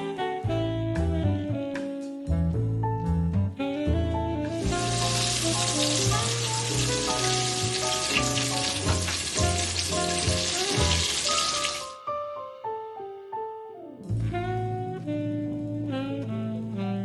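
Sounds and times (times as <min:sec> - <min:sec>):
saxophone jazz: 0:00.0 - 0:12.0, 0:14.1 - 0:17.0
chicken sizzling in hot grease: 0:04.6 - 0:12.0.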